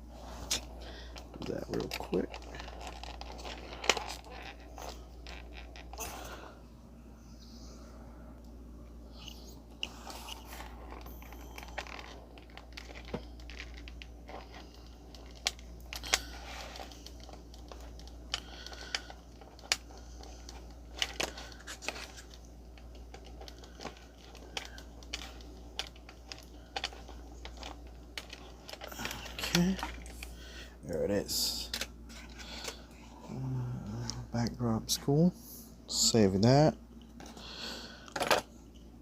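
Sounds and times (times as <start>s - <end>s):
steady low hum: 0.0s - 39.0s
plastic packaging crinkling: 0.4s - 6.4s, 9.2s - 30.6s.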